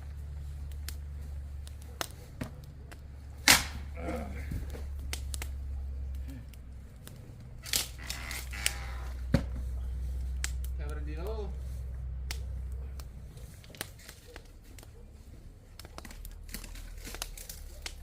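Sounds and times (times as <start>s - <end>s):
steady low hum: 0.0s - 18.0s
sharp cracks and clicks: 0.6s - 4.0s, 4.8s - 9.0s, 10.3s - 11.0s, 12.2s - 15.0s, 15.7s - 18.0s
voice murmuring: 3.9s - 4.7s.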